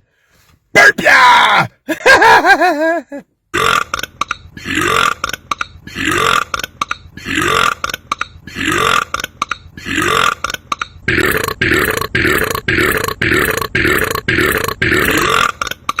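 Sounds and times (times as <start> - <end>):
man belching: 4.6 - 6.6, 7.2 - 9.2, 9.8 - 15.8.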